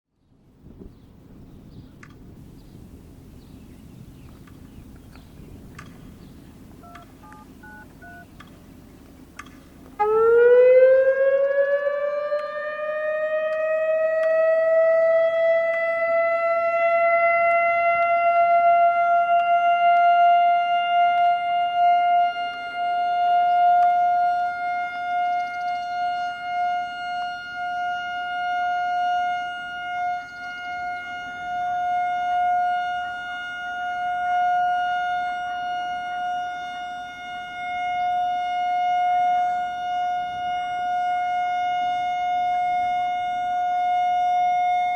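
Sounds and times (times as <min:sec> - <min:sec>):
light wind: 0:00.2 - 0:44.9
outdoor warning siren: 0:02.9 - 0:44.9
short beeping tones: 0:06.8 - 0:08.3.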